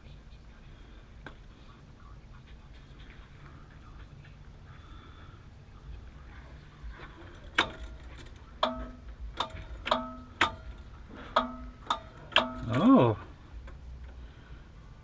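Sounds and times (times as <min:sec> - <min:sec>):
sharp metallic clicks with ring: 0:07.6 - 0:12.9.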